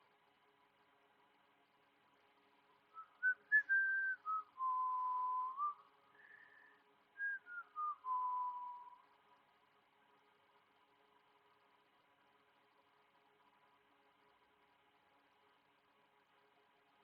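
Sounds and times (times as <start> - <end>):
person whistling a tune: 3.0 - 5.8, 7.2 - 9.0.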